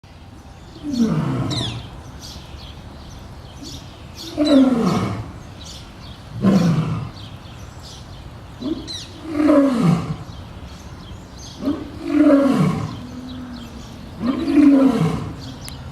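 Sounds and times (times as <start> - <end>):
lion roaring: 0.8 - 1.9, 4.2 - 5.4, 6.3 - 7.2, 8.6 - 10.3, 11.6 - 15.6.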